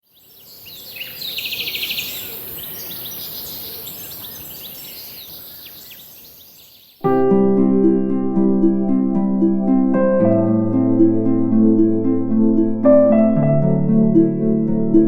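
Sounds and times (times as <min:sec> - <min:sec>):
small birds chirping and singing: 0:00.0 - 0:07.2
steady background hiss: 0:00.1 - 0:07.0.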